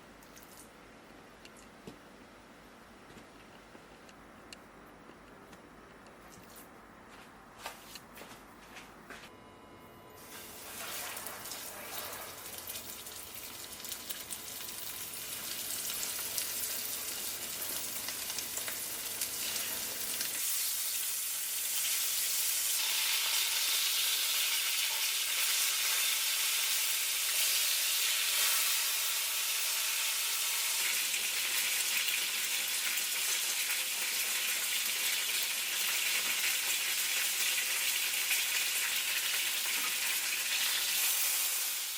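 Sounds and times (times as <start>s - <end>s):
food sizzling in a pan: 10.2s - 41.9s.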